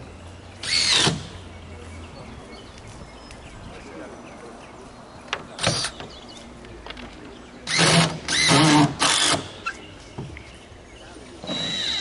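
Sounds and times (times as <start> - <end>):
power drill whining: 7.7 - 9.5, 11.4 - 12.0.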